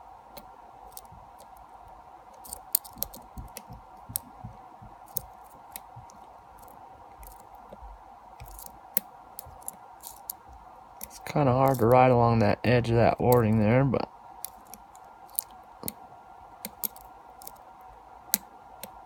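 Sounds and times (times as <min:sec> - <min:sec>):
faint steady hum: 0:00.0 - 0:19.0
lock pick scraping and clicking: 0:02.4 - 0:04.3, 0:08.4 - 0:10.4, 0:14.4 - 0:16.0, 0:16.6 - 0:17.6.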